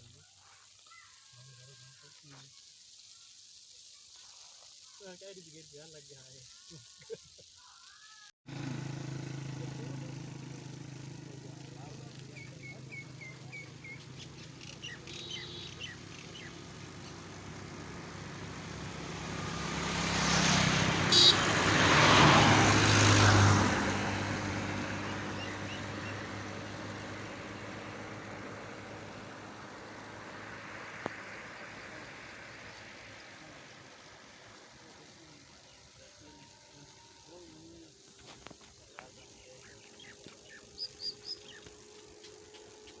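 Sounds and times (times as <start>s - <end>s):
road vehicle passing by: 8.5s - 43.0s
bird chirps: 12.4s - 17.2s, 39.2s - 43.0s.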